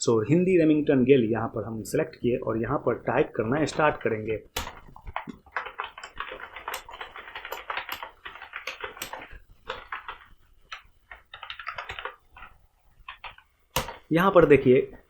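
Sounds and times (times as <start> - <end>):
keyboard typing clicks: 4.6 - 14.1.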